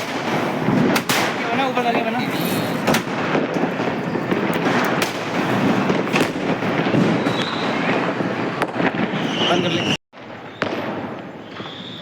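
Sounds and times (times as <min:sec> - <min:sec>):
firework bangs: 0:00.0 - 0:12.0.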